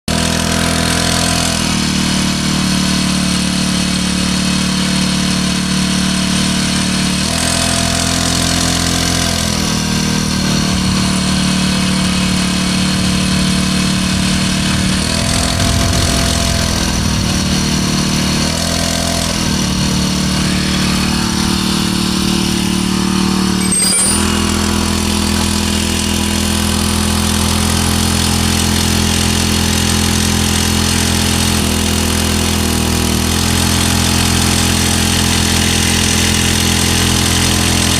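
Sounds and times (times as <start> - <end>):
small engine running: 0.1 - 37.9.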